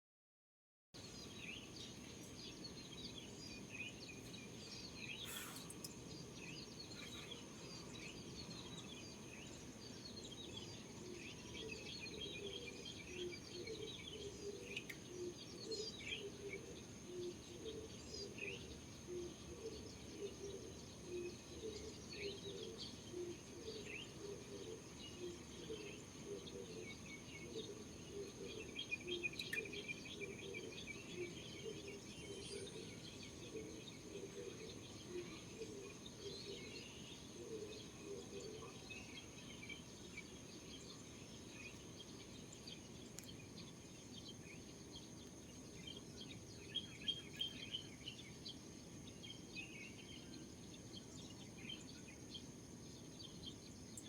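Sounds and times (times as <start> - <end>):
birds chirping and tweeting: 1.0 - 54.0
lower bird call: 5.0 - 6.0.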